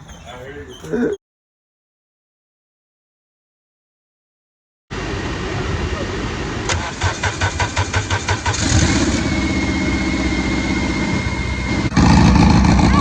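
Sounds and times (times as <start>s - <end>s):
car engine starting and idling: 5.2s - 13.0s.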